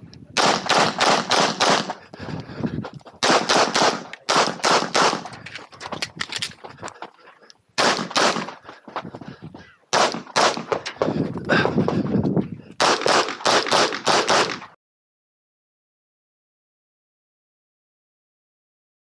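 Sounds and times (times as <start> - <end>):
pistol shots: 0.4 - 2.0, 3.2 - 5.4, 7.8 - 8.6, 9.9 - 10.9, 12.8 - 14.7.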